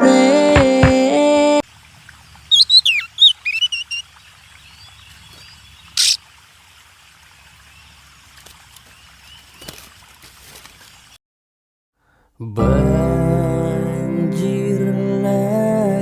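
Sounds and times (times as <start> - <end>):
outdoor ambience: 0.0 - 11.2
bird chirping: 2.1 - 6.2, 8.8 - 9.9
harsh bird call: 2.5 - 5.1, 5.7 - 6.2.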